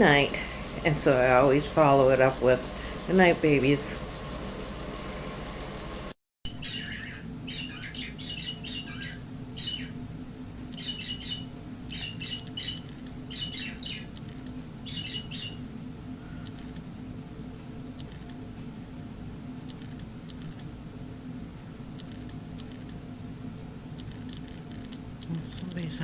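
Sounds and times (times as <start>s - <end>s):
steady low hum: 0.0s - 26.0s
toy bird chirping electronically: 6.5s - 10.0s, 10.7s - 15.6s.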